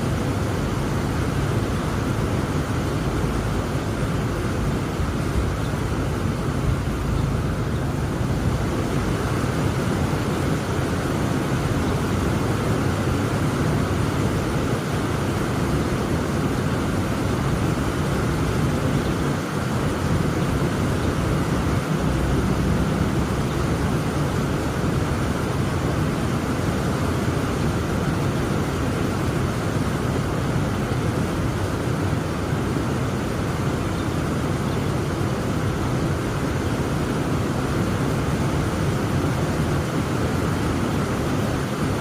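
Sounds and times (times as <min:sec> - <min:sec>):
heavy rain falling: 0:00.0 - 0:42.0.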